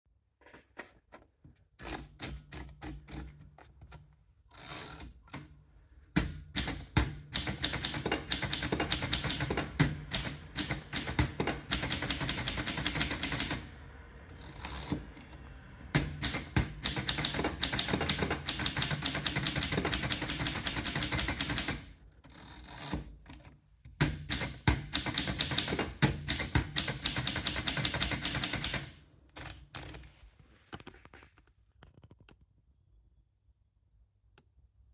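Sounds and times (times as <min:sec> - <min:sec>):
manual typewriter key strikes: 0:06.2 - 0:13.7, 0:15.9 - 0:21.9, 0:24.0 - 0:29.9.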